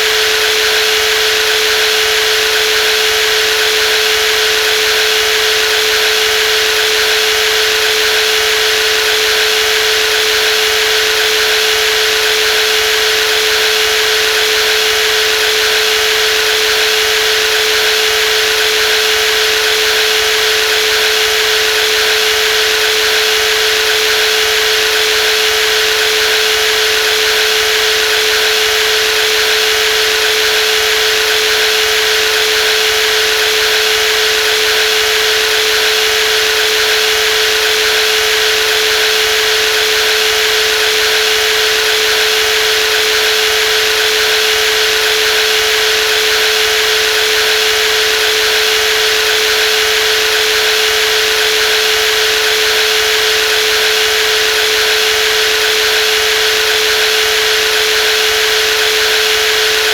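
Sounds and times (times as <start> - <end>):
jigsaw motor whine: 0.0 - 59.9.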